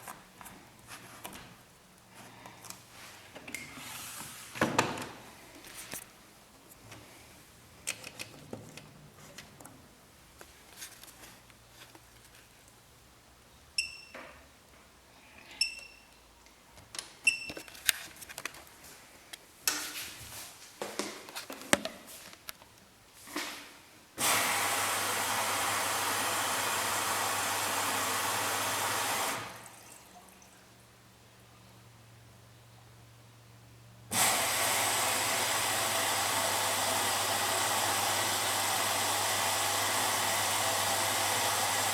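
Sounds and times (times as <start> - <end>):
control panel beeps: 13.8 - 14.2.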